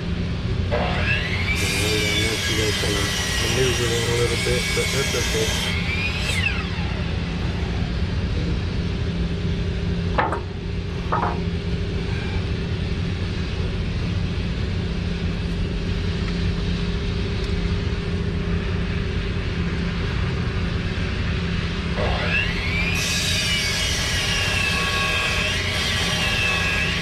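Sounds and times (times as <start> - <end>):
low machinery rumble: 0.0 - 22.8
faint hum: 5.7 - 22.2
metal clunks: 10.1 - 11.5.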